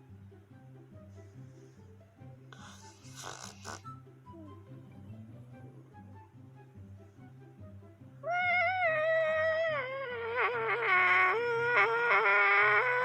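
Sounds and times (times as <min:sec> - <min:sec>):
soft background music: 0:00.0 - 0:13.0
long wailing yowl: 0:08.2 - 0:13.0.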